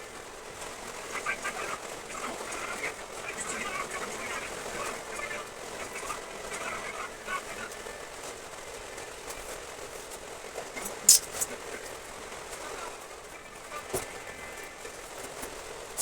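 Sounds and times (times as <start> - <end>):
faint voice-like sounds: 0.0 - 9.7, 10.6 - 16.0
sharp click: 11.1 - 11.5.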